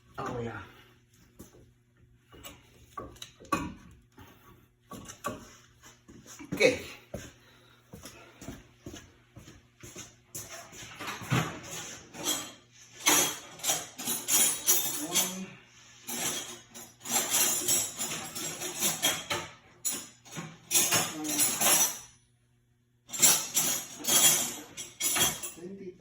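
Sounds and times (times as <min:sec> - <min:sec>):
metal tools jingling and clinking: 0:11.2 - 0:22.2, 0:23.1 - 0:25.7.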